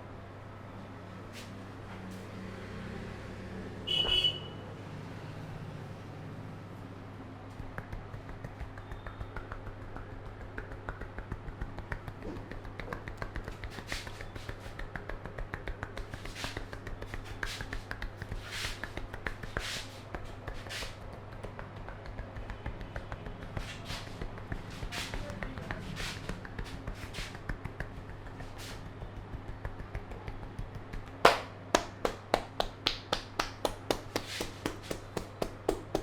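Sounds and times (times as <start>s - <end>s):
fingertips tapping on scalp: 7.5s - 36.0s
hands rubbing through hair: 7.6s - 22.3s, 23.4s - 29.7s, 31.1s - 36.0s.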